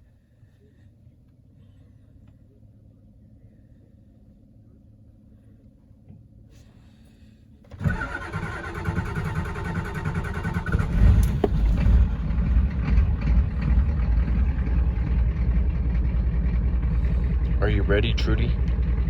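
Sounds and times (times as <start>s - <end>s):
starter cranking engine: 7.7s - 19.0s
vehicle engine running: 7.8s - 19.0s.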